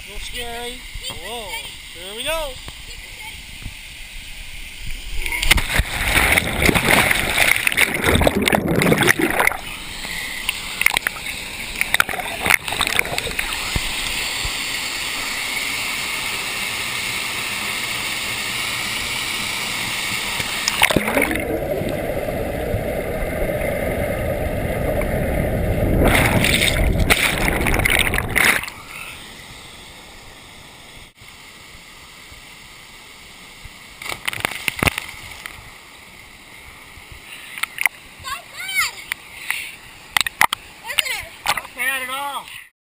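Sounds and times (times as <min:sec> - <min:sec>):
waterfall rushing: 0:05.1 - 0:30.9
short water splashes: 0:05.3 - 0:09.7, 0:20.6 - 0:21.6, 0:26.0 - 0:28.8.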